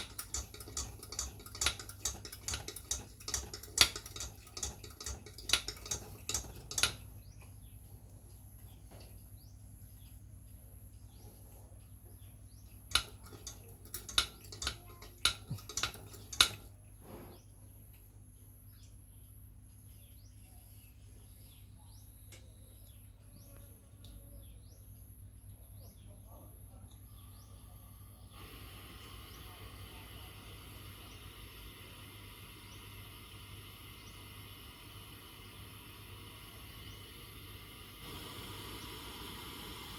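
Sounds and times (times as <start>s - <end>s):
faint birds chirping: 0.0s - 39.9s
metallic clinks and taps: 12.9s - 16.7s.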